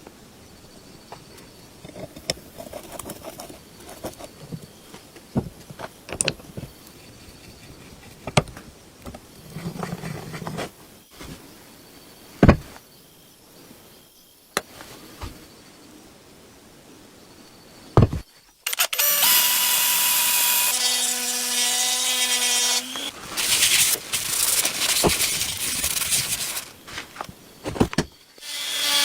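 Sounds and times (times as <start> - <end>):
scraping rub: 7.0 - 8.4, 20.9 - 27.4
small parts and tools clicking: 18.6 - 27.3.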